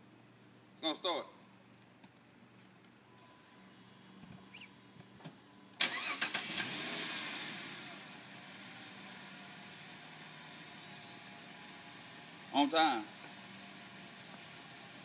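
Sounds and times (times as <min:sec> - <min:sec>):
car engine starting and idling: 0:05.7 - 0:15.0.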